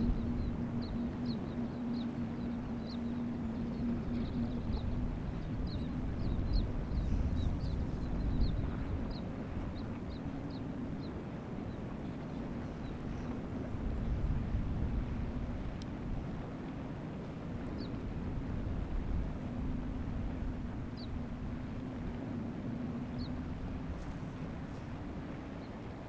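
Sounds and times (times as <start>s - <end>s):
low rumble with hum: 0.0s - 10.0s.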